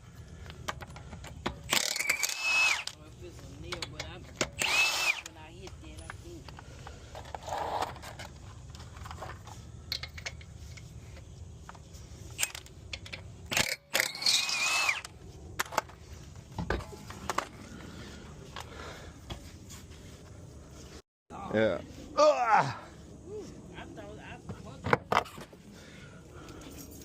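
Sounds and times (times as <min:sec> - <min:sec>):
tools and metal parts clinking: 0:00.4 - 0:03.0, 0:05.8 - 0:17.6.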